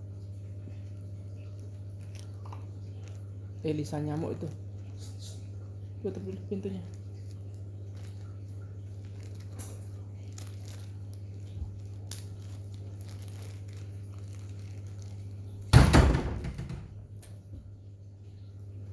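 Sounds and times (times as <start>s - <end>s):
light clicks and rustles: 6.8s - 15.7s
loud thump with rustling: 15.7s - 17.1s.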